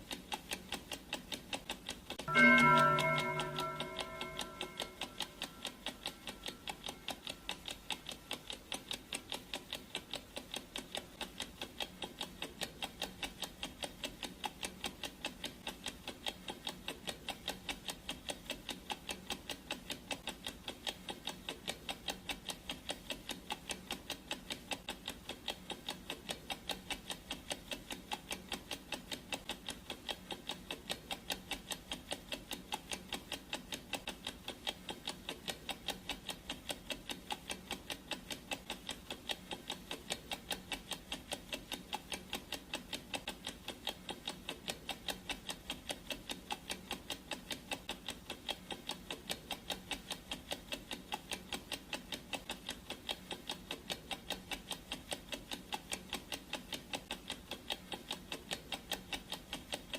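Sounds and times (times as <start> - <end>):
clock ticking: 0.0 - 59.9
ringing tone: 2.3 - 6.3.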